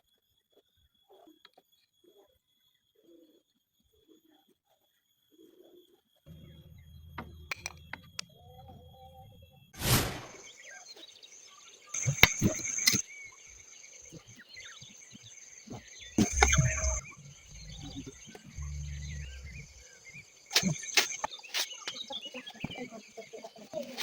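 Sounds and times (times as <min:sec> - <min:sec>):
faint high-pitched tone: 0:16.2 - 0:21.3.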